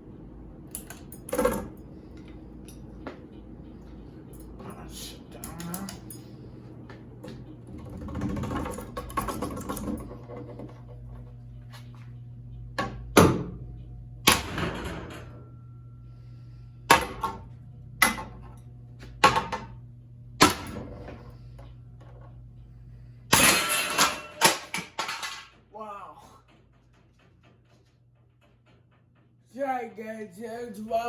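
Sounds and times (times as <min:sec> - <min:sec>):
steady low hum: 0:00.0 - 0:31.0
ceiling fan being smashed: 0:14.2 - 0:15.6, 0:16.9 - 0:17.4, 0:20.4 - 0:21.2, 0:23.3 - 0:27.8.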